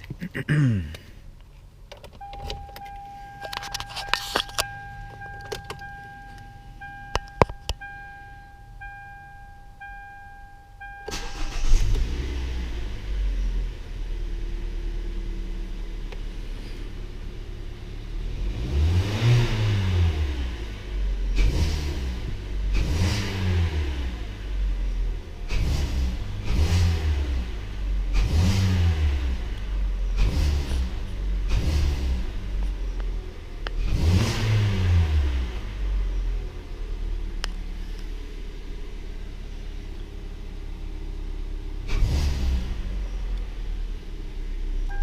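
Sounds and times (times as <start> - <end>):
warning chime beeping: 2.2 - 11.6
car engine starting and revving: 9.7 - 45.0.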